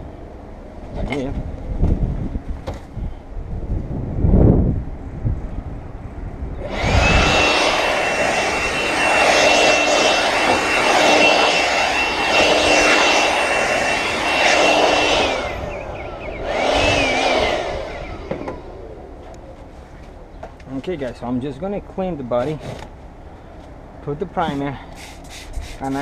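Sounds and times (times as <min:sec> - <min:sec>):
rushing air: 0:02.1 - 0:19.2
high-speed electric motor whine: 0:06.5 - 0:19.5.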